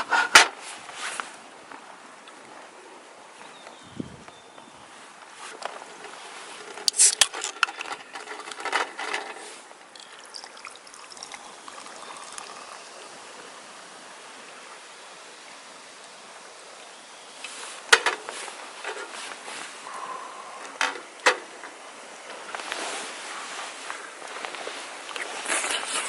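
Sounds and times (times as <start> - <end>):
liquid trickling: 9.8 - 16.4.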